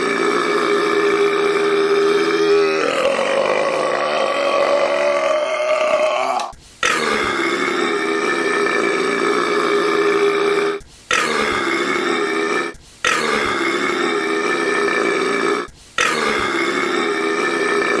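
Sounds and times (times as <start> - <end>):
loud drawn-out burps: 0.0 - 18.0.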